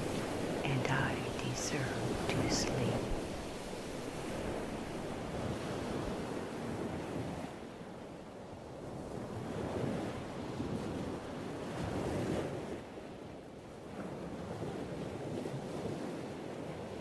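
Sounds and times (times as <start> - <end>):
ocean waves breaking: 0.0 - 7.9.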